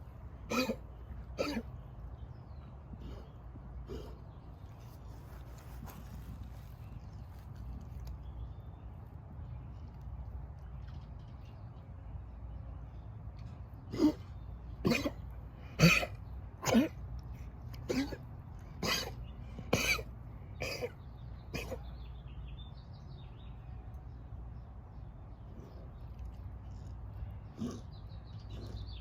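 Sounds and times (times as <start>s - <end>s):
pet animal coughing: 0.4s - 2.3s, 2.9s - 4.5s, 13.8s - 22.1s, 27.4s - 29.0s.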